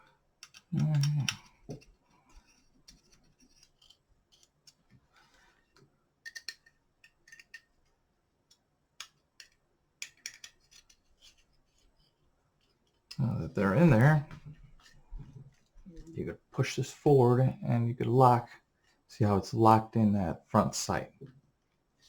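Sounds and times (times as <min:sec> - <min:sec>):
small metal clicks and taps: 0:00.4 - 0:04.8, 0:06.2 - 0:07.7, 0:08.5 - 0:11.0.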